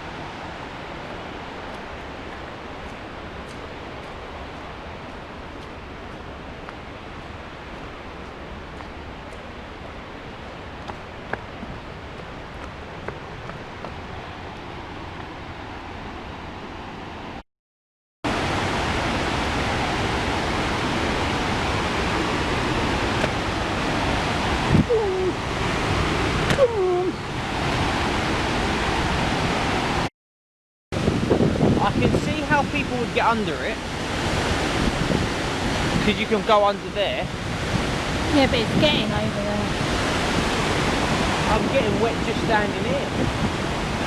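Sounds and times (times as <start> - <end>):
waterfall rushing: 18.3 - 30.1, 31.0 - 44.0.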